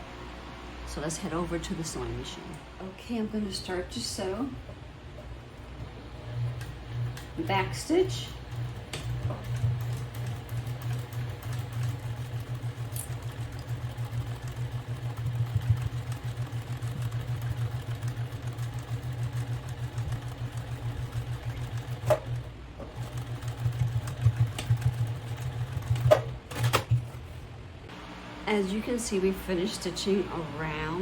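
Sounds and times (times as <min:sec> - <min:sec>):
sewing machine stitching: 0:05.7 - 0:27.2.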